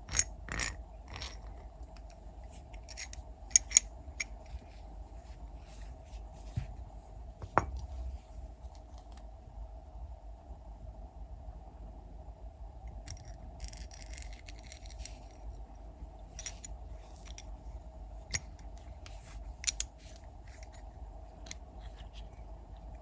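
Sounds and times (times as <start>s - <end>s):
steady low hum: 0.0s - 23.0s
small metal parts clinking: 0.1s - 4.3s, 13.0s - 15.6s, 16.4s - 17.5s, 18.3s - 20.8s.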